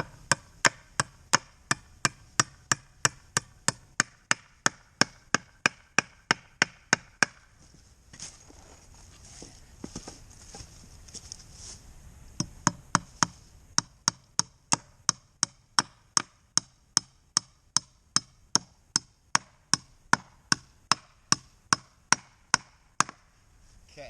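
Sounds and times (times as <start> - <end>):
hammer driving nail into wood: 0.0 - 7.5, 12.4 - 23.2.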